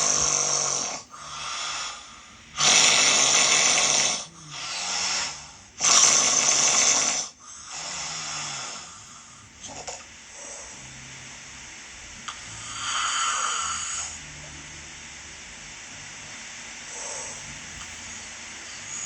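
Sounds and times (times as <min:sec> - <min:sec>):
low-pitched breaths: 0:00.0 - 0:05.8, 0:16.8 - 0:19.0
man snoring loudly: 0:00.0 - 0:11.1, 0:12.5 - 0:14.5.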